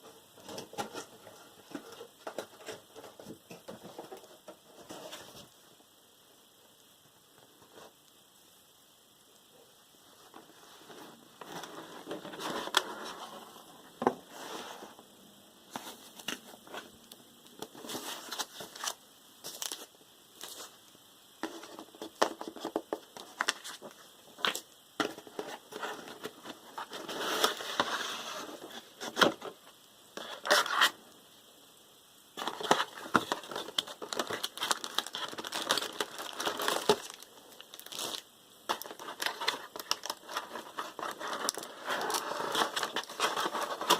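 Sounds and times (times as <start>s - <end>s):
plastic and paper crinkling: 17.6s - 20.8s, 21.4s - 29.6s, 32.4s - 43.9s.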